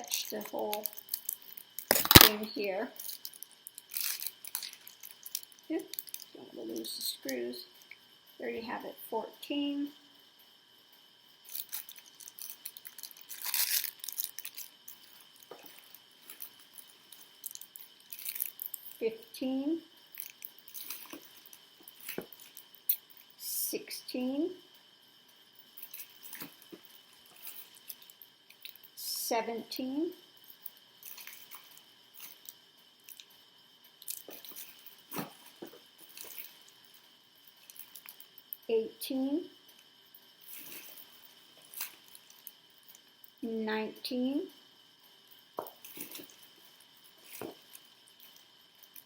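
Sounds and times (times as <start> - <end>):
packaging rustling: 0.2 - 2.4, 3.0 - 6.3, 11.5 - 19.0
plastic covers clicking and rustling: 0.2 - 2.4.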